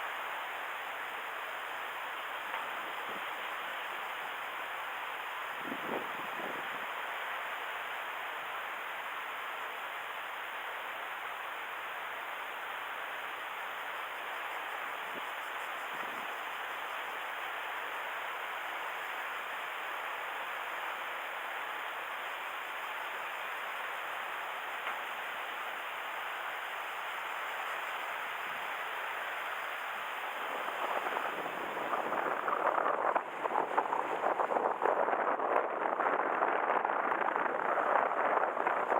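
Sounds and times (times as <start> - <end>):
water at the shore: 0.0 - 38.9
wind buffeting microphone: 5.5 - 7.0, 30.3 - 38.9
wind hissing: 26.6 - 38.9.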